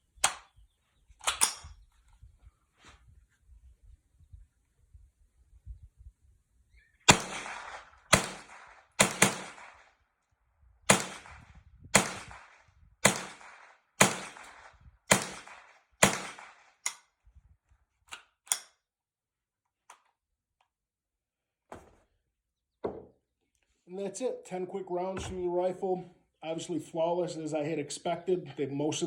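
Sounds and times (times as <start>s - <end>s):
rifle shots with ringing tail: 7.1s - 9.9s, 10.9s - 16.8s.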